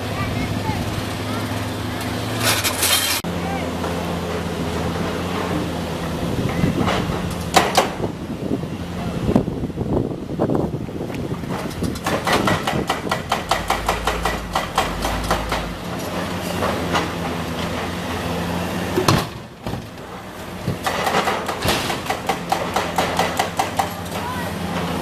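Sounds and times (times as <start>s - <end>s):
excavator diesel engine: 0.0s - 25.0s
rapid clatter of knocks: 11.4s - 25.0s
sharp knock: 12.0s - 16.0s.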